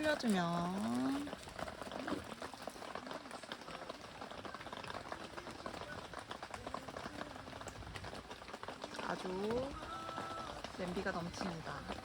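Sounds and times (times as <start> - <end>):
broth bubbling on the boil: 0.0 - 12.0.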